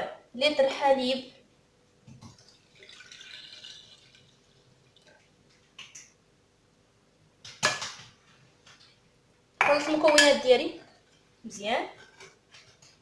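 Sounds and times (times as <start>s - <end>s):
milk pouring into a saucepan: 2.3s - 5.3s.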